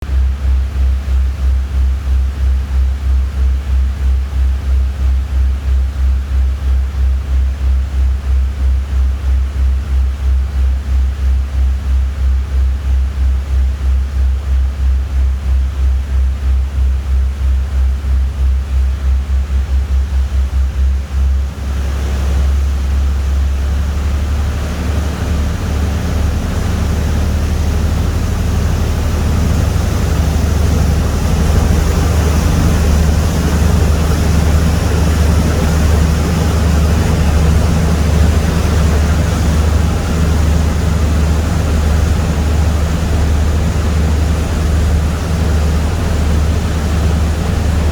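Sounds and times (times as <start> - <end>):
boat engine throbbing: 0.1 - 47.9
wind: 18.9 - 47.9
rush of water: 20.1 - 47.9.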